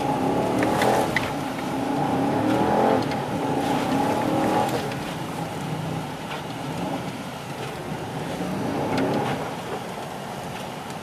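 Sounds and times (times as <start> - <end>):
engine revving: 0.0 - 4.9.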